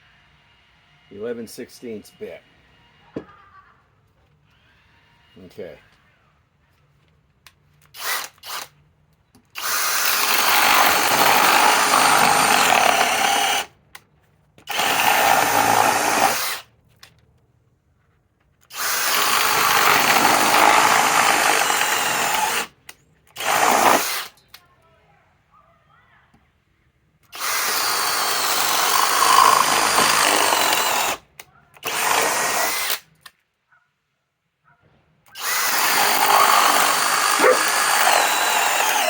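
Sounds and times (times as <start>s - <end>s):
cordless drill drilling into wood: 7.9s - 8.7s, 9.6s - 13.7s, 14.7s - 16.7s, 18.7s - 24.4s, 27.3s - 33.1s, 35.4s - 39.0s.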